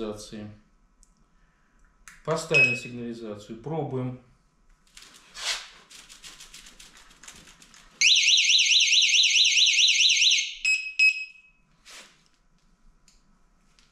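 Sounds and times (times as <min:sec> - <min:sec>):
short beeps: 0:02.5 - 0:02.9.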